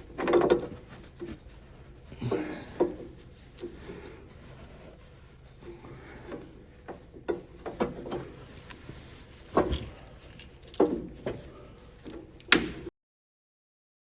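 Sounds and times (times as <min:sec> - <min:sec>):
tools knocking and clattering: 0:00.0 - 0:01.4, 0:06.9 - 0:12.7.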